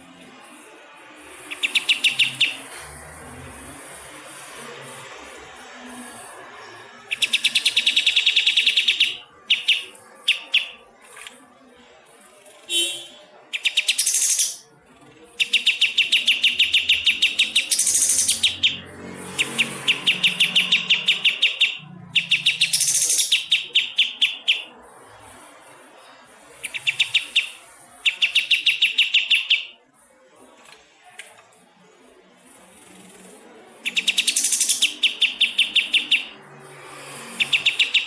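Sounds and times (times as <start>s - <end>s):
songbird calling in rapid bursts: 1.3s - 2.7s, 7.1s - 10.8s, 13.5s - 14.7s, 15.4s - 24.8s, 26.6s - 29.8s, 33.8s - 38.0s.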